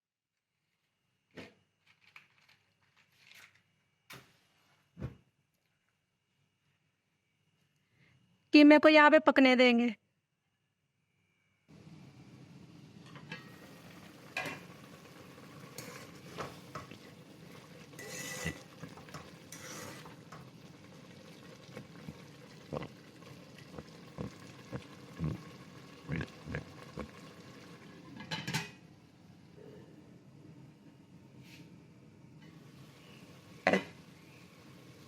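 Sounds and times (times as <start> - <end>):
spoon scraping pot: 15.6 - 20.5.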